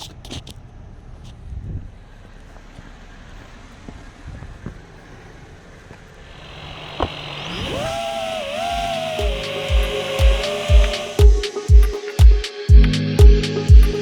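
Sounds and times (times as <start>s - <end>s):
hiss: 6.2s - 12.7s
wavering tone: 6.3s - 14.0s
low thumping beat: 6.7s - 14.0s.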